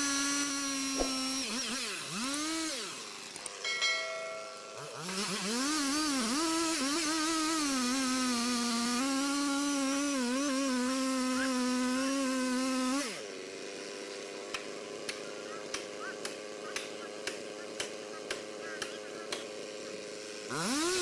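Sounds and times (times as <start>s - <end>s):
chainsaw engine revving: 0.0s - 3.7s, 4.4s - 21.0s.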